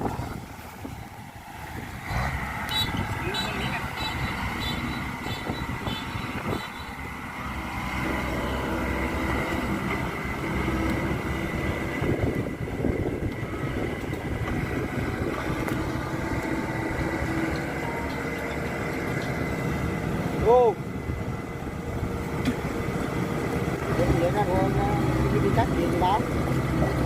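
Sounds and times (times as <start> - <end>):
combine harvester engine drone: 0.0 - 27.0
high whine: 2.5 - 23.1.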